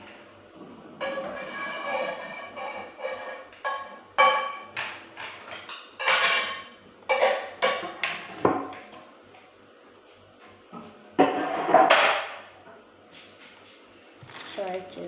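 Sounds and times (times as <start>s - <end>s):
kitchenware clanking: 1.0s - 8.9s.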